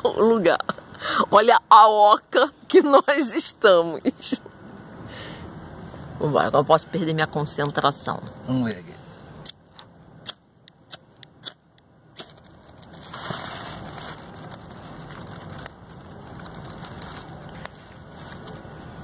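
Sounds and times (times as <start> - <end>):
campfire crackling: 7.6 - 19.0.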